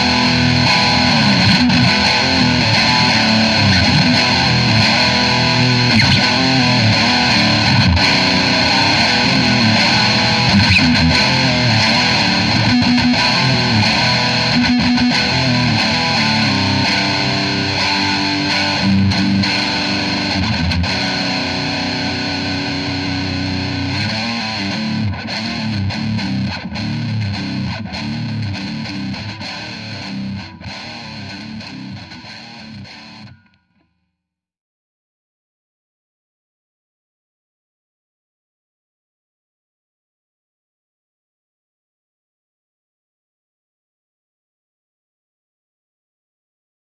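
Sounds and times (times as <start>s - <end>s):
distorted electric guitar: 0.0s - 33.6s.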